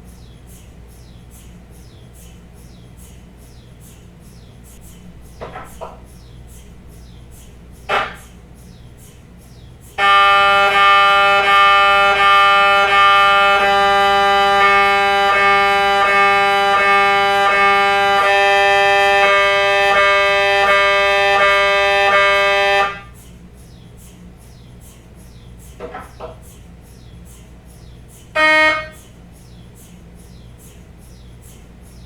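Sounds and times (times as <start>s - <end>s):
mri scanner pulsed buzzing: 0.0s - 32.0s.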